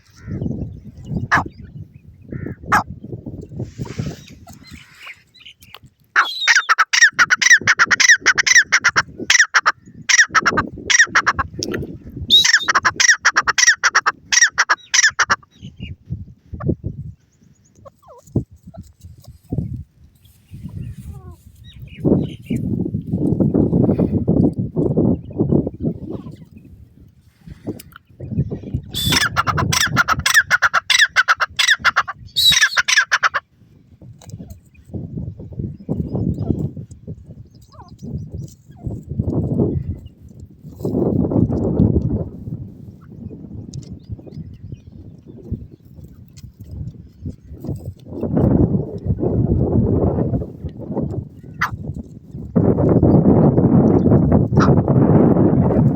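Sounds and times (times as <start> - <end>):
francolin calling harsh notes: 6.2 - 11.3.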